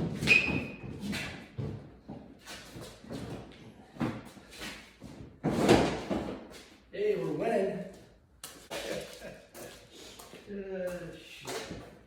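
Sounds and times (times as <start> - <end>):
short squeak: 0.2 - 0.8.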